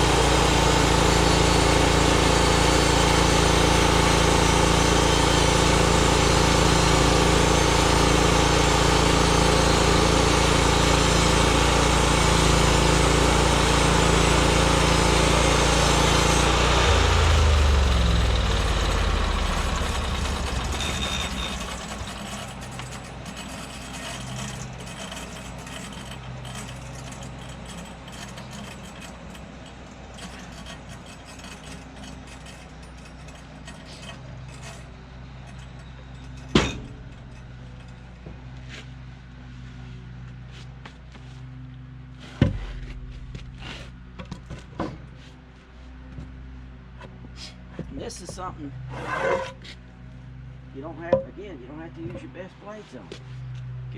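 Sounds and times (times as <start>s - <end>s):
small gasoline engine running: 0.0s - 34.8s.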